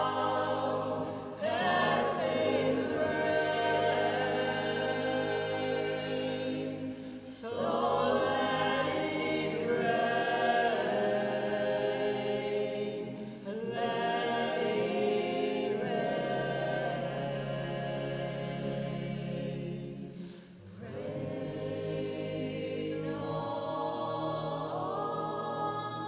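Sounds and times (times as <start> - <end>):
choir singing chords: 0.0 - 26.0.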